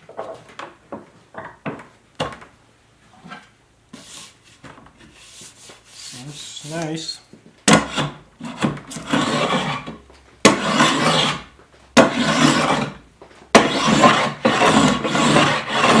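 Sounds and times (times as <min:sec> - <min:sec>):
hand tool stroking wood: 0:04.0 - 0:07.1, 0:07.7 - 0:13.0, 0:13.6 - 0:16.0.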